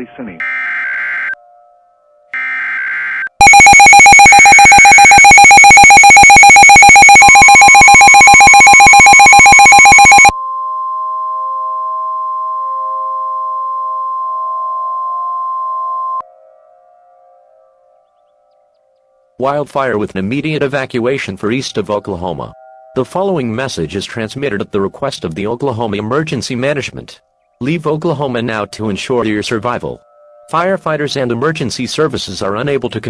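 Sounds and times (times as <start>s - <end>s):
pulsing two-tone alarm: 0.4s - 1.4s, 2.4s - 10.4s
screeching digital data burst: 2.4s - 10.3s
steady single-pitch beep: 3.4s - 10.4s.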